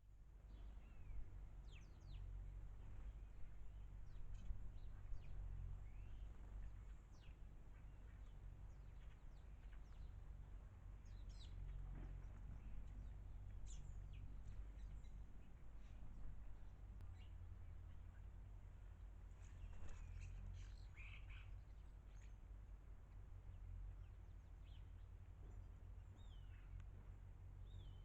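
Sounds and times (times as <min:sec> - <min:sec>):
faint low rumble: 0:00.0 - 0:28.0
birds chirping: 0:11.0 - 0:18.3.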